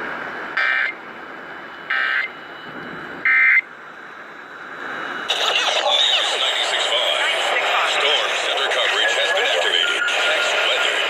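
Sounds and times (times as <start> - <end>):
warbling two-tone data bursts: 1.9 - 3.7
radio hiss: 4.8 - 11.0.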